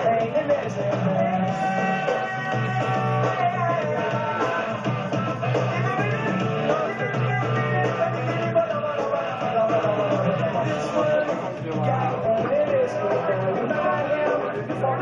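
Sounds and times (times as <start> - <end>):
guitar: 0.0 - 15.0
person singing: 0.0 - 15.0
rock music: 0.0 - 15.0.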